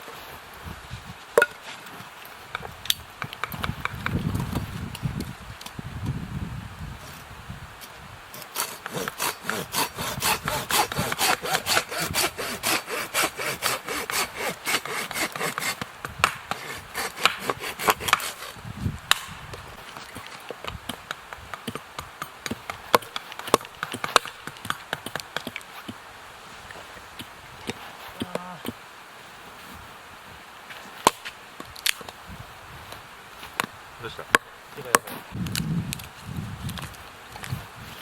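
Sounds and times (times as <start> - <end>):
hand saw cutting wood: 8.3 - 18.6.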